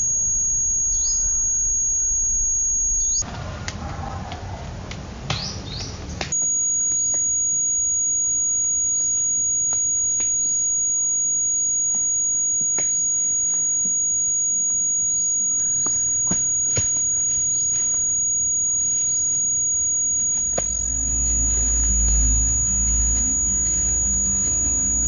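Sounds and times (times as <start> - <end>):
high-pitched whine: 0.0 - 3.2, 6.4 - 25.0
birds chirping: 0.6 - 1.9.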